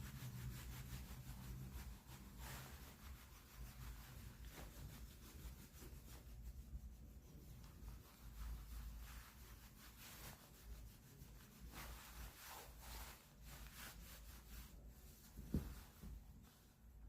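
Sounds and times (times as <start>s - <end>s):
faint rubbing strokes: 0.0s - 17.0s.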